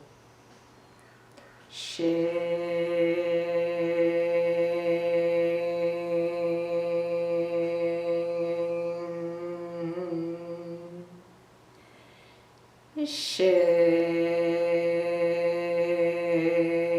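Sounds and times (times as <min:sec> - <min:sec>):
woman chanting a held tone: 0:01.8 - 0:11.2, 0:13.0 - 0:16.9.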